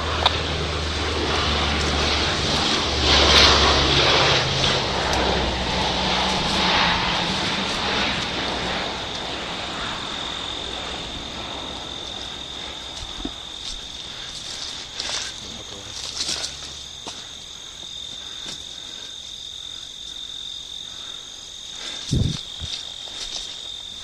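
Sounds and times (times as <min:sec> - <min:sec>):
airplane passing over: 0:00.0 - 0:24.0
insect chirr: 0:00.0 - 0:24.0.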